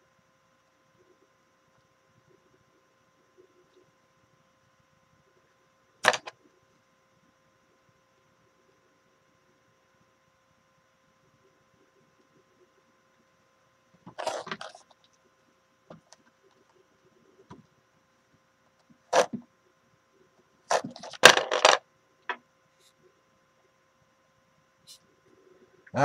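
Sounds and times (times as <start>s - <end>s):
faint steady hum: 0.0s - 26.0s
objects clattering on workbench: 20.7s - 21.8s.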